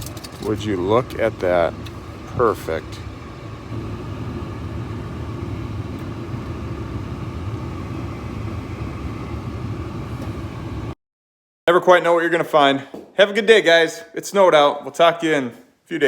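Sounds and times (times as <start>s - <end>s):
car blower fan rushing air: 0.0s - 11.0s.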